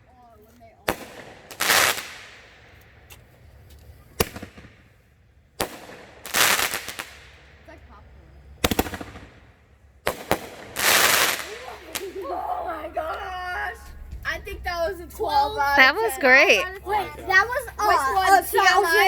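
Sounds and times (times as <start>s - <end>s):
firework bangs: 0.0s - 14.7s
firework crackling burst: 0.8s - 12.8s.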